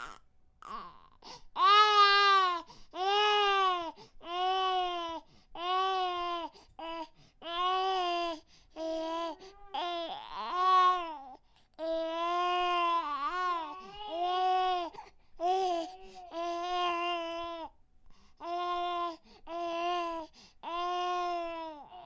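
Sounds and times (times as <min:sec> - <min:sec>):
baby crying: 0:00.0 - 0:06.9, 0:09.0 - 0:17.7.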